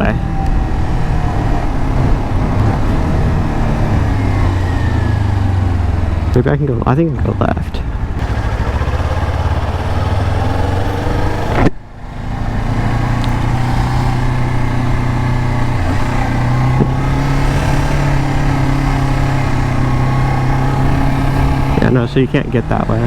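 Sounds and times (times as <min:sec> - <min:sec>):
motorcycle engine running: 0:01.8 - 0:06.5, 0:07.2 - 0:23.0.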